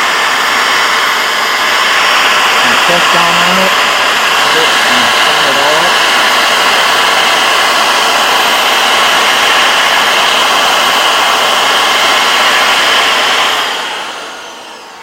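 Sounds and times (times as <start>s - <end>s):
electric drill running: 0.0s - 15.0s.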